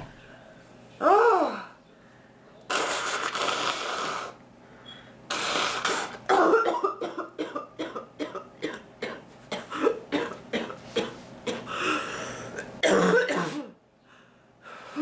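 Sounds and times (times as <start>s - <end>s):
woman coughing: 6.3s - 11.7s, 12.8s - 13.8s.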